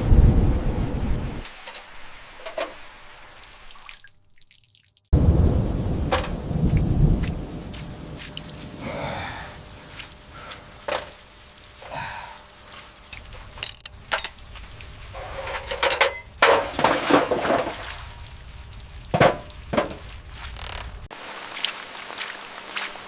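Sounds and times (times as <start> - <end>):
tools and parts knocking and clinking: 6.1 - 6.4, 10.9 - 11.2, 13.1 - 17.4
scraping or rustling: 12.8 - 18.1.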